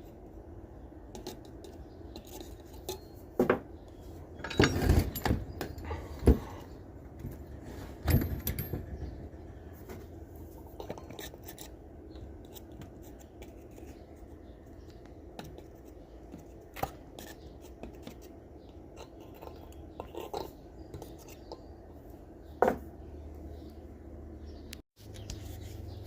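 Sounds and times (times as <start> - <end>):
metal clicks and scraping: 4.3 - 6.0.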